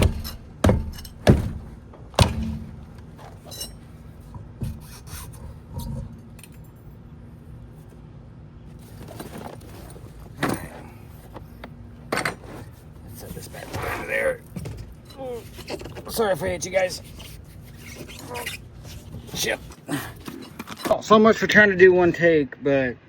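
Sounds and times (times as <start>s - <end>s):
sharp knocks: 0.0s - 3.2s
metal clatter: 0.0s - 6.8s
tools clanking in a toolbox: 0.0s - 6.9s, 8.8s - 21.0s.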